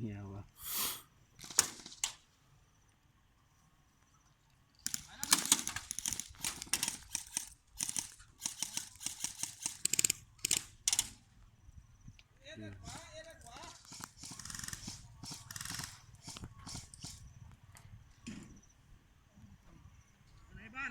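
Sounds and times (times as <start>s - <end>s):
airsoft guns firing: 1.4s - 2.2s, 4.8s - 11.2s, 12.8s - 17.2s.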